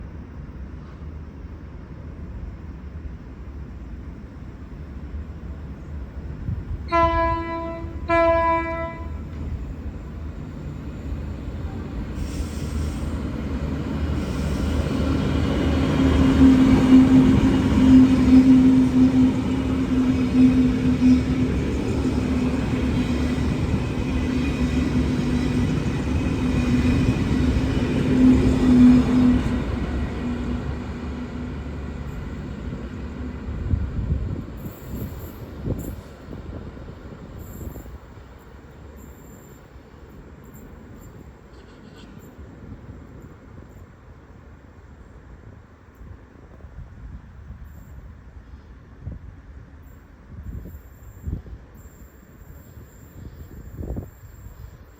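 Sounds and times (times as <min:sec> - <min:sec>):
rail noise: 0:00.0 - 0:54.9
train rumble: 0:00.0 - 0:54.9
railcar horn blasts: 0:06.9 - 0:09.4, 0:27.8 - 0:30.7, 0:41.5 - 0:42.4.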